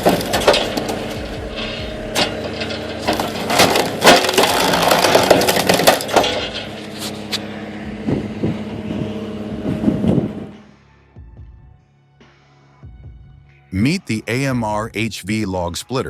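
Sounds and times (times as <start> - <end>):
wood cracking and splintering: 0.0 - 7.4
log splitter engine drone: 0.0 - 11.2.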